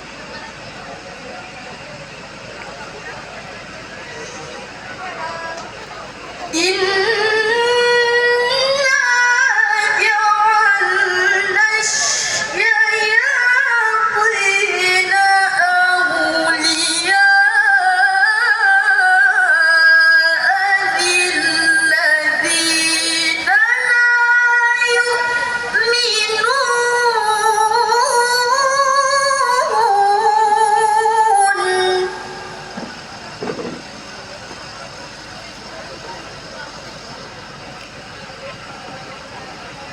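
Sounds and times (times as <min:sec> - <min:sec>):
low background noise: 0:00.0 - 0:39.9
woman reciting melodically: 0:06.4 - 0:32.7.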